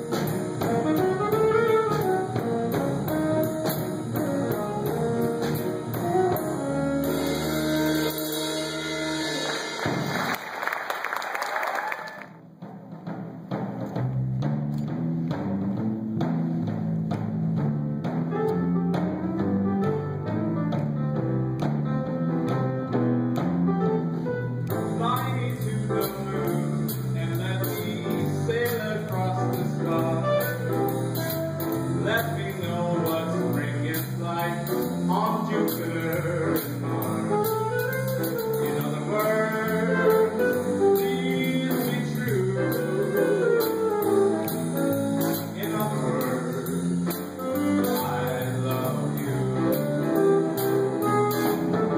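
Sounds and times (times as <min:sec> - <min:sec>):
cymbals: 0:00.0 - 0:10.4
jazz band playing: 0:00.0 - 0:11.2, 0:12.6 - 0:51.9.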